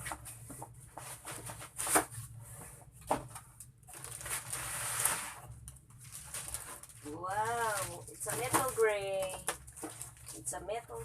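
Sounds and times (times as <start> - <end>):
packaging rustling: 3.0 - 11.0.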